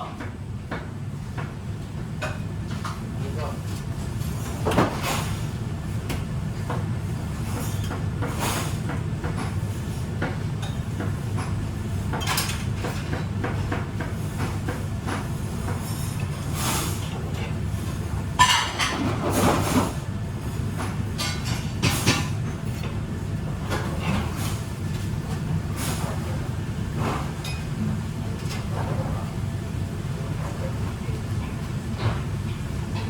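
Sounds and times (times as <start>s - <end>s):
low machine hum: 0.0s - 33.0s
dishes and utensils clattering: 18.4s - 20.0s, 20.7s - 23.0s.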